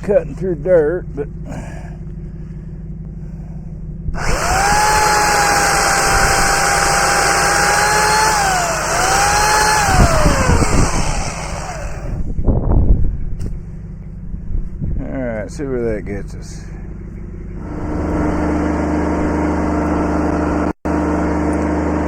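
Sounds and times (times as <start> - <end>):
chainsaw cutting roots: 4.2 - 12.2.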